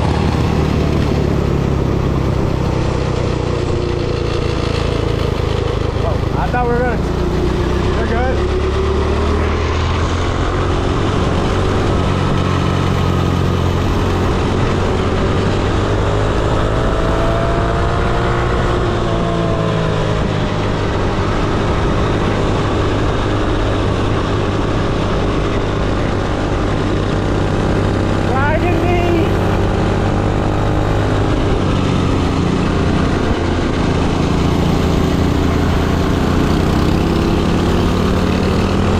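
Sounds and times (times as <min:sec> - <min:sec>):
minibike engine running: 0:00.0 - 0:38.9.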